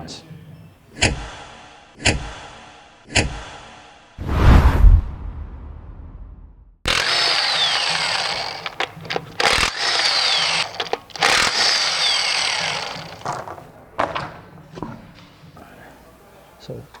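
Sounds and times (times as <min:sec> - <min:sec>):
power tool running: 0:06.9 - 0:13.7.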